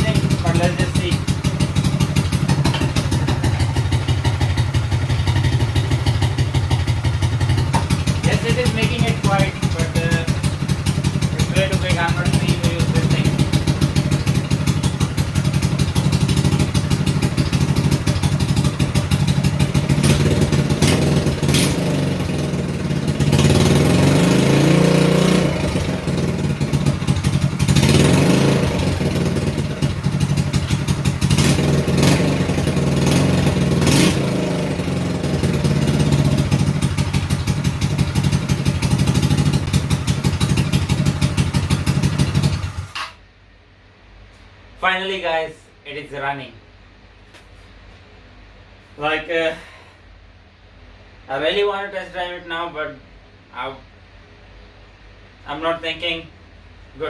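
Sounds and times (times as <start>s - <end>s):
small engine revving: 5.4s - 43.1s.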